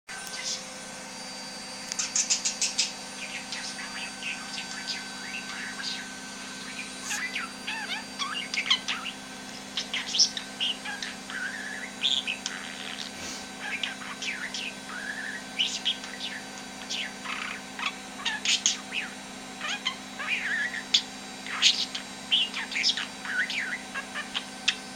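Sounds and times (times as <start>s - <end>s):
budgerigar chirping and twittering: 0.3s - 0.8s, 1.9s - 24.9s.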